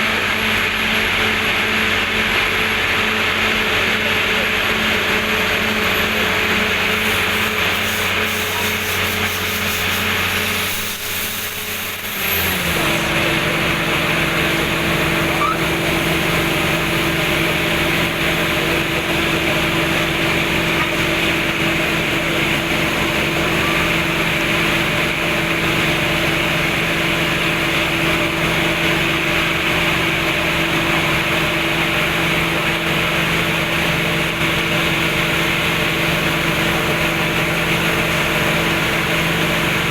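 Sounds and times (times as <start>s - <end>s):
drilling rig engine throbbing: 5.4s - 29.5s.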